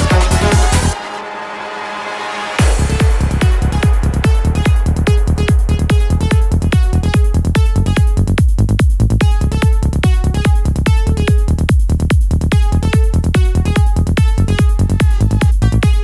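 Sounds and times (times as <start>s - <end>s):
kick drum beat: 0.0s - 1.0s, 2.6s - 16.0s
electronic trance music: 0.0s - 16.0s
repeating synth notes: 2.6s - 8.5s, 9.2s - 16.0s.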